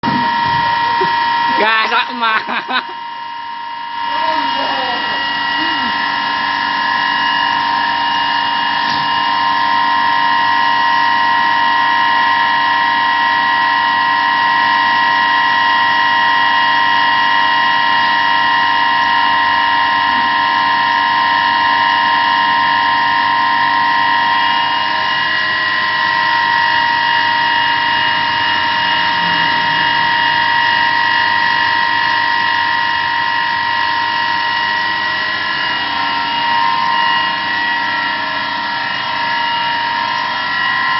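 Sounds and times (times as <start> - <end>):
machine whining: 0.0 - 40.9.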